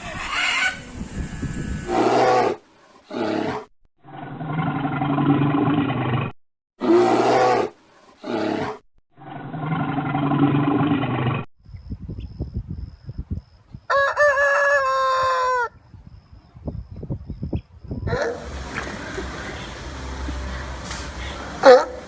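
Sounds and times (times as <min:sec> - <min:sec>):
rooster crowing: 0:13.9 - 0:15.8.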